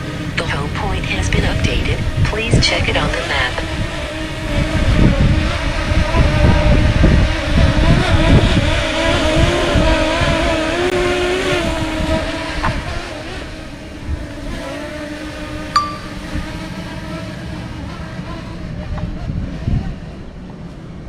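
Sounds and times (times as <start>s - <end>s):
wind buffeting microphone: 3.6s - 13.0s, 18.7s - 21.0s.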